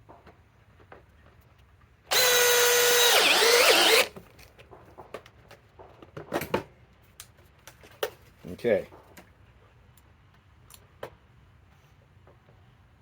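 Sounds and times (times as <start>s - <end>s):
cordless drill driving screw into metal: 2.1s - 4.2s.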